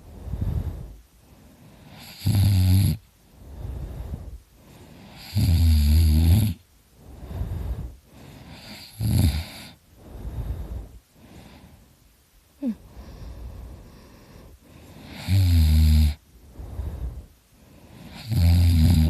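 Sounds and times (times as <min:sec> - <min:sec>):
soft breathing: 0:00.0 - 0:02.2, 0:03.0 - 0:05.6, 0:06.6 - 0:19.0
man snoring loudly: 0:01.9 - 0:03.0, 0:05.1 - 0:06.6, 0:08.5 - 0:09.8, 0:15.0 - 0:16.2, 0:18.1 - 0:19.0.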